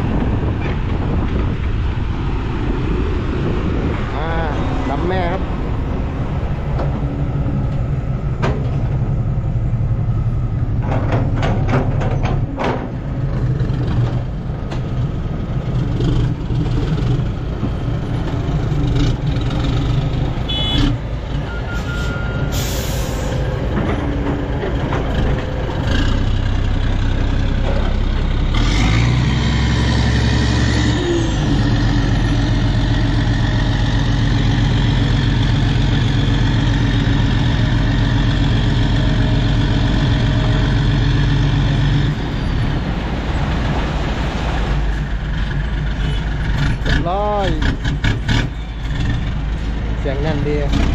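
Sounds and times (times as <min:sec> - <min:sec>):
heavy truck engine running: 0:00.0 - 0:50.9
air brakes hiss: 0:21.8 - 0:23.4.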